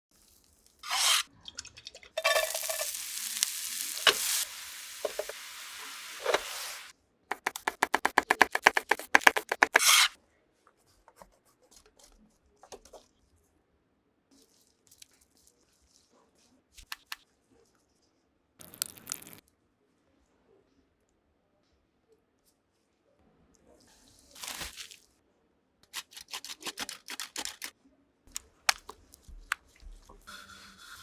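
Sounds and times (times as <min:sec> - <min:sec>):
food sizzling: 0:00.1 - 0:06.9.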